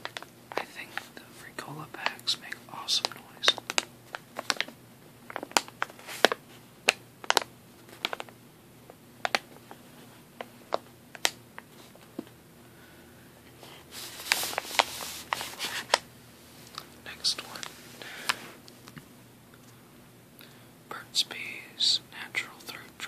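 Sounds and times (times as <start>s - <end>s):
plastic bag crinkling: 3.0s - 6.4s, 7.2s - 8.3s, 13.8s - 16.0s.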